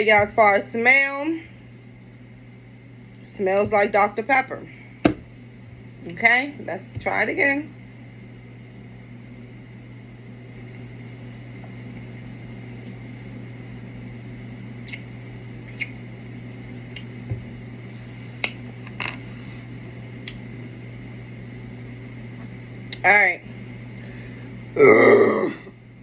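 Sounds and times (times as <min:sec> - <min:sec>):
steady low hum: 0:00.0 - 0:26.0
soft mouth clicks: 0:14.8 - 0:15.1, 0:15.7 - 0:16.0, 0:16.9 - 0:17.1.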